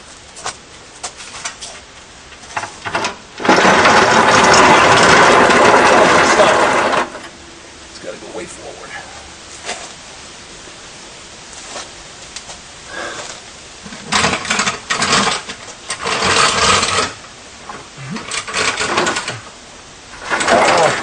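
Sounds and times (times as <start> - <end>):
car chassis rattling across floor: 2.4 - 7.2.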